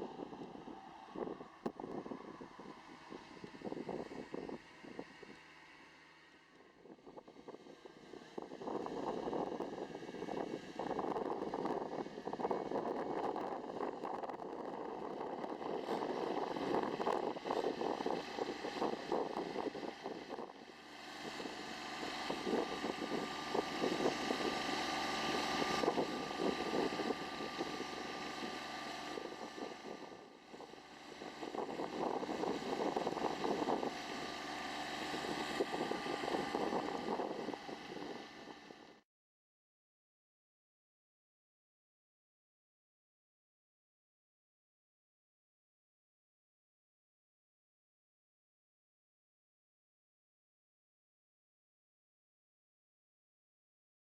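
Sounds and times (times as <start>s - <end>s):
wind on microphone: 0.0s - 5.4s, 6.9s - 38.9s
tractor engine running: 15.4s - 38.8s.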